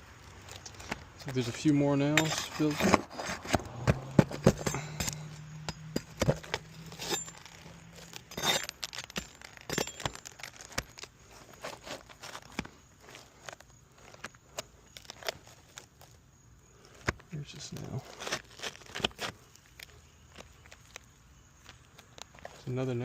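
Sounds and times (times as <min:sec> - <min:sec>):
low steady hum: 0:00.0 - 0:22.8
hand tool prying nails from shingles: 0:02.1 - 0:15.4.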